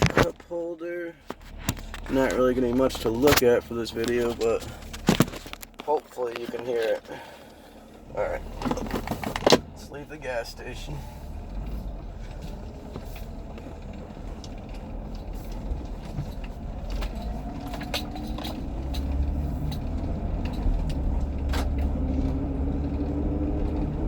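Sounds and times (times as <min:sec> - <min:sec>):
car engine and road rumble: 0:00.0 - 0:24.0
rising drivetrain whine: 0:06.9 - 0:24.0.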